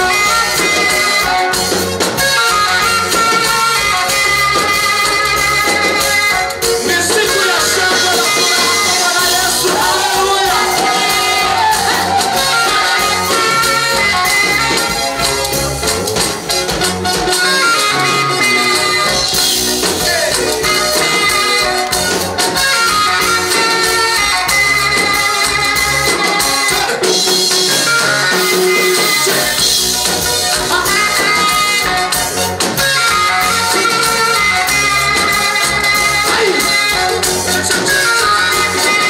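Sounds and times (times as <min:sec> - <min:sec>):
instruments with percussion beat: 0:00.0 - 0:39.0
person singing: 0:06.7 - 0:14.6, 0:17.4 - 0:21.8.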